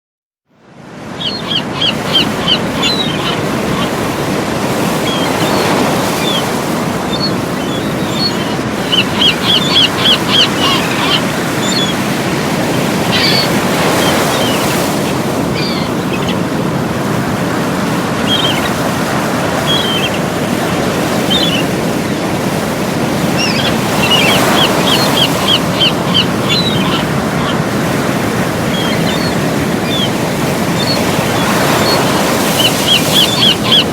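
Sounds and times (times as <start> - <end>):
surf washing on shore: 0.6 - 33.9
birds calling high notes: 1.1 - 33.9.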